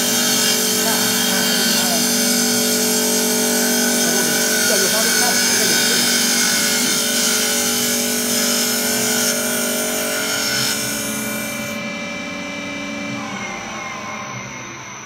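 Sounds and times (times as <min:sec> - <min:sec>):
cutter hissing on wood: 0:00.0 - 0:11.8
lathe motor whining: 0:00.0 - 0:15.0.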